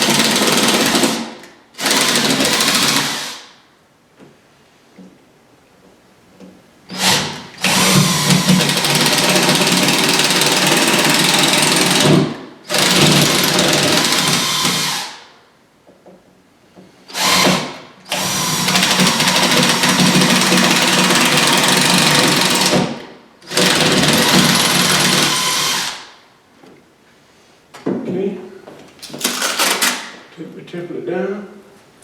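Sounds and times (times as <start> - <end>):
power drill boring into wood: 0.0 - 3.5, 6.9 - 15.3, 17.1 - 26.1.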